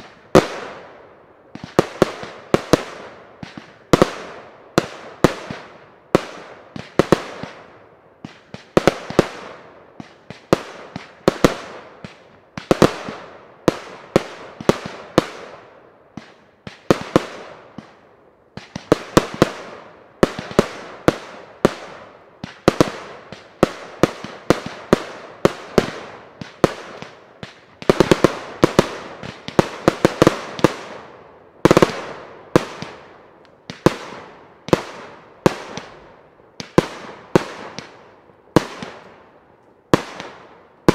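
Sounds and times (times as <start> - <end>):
rapid firework volleys: 0.0 - 39.2
firework bangs with echo: 18.6 - 39.2.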